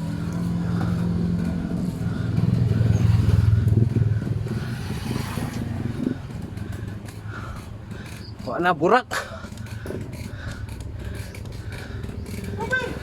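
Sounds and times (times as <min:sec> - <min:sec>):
vehicle engine passing: 0:00.0 - 0:07.5.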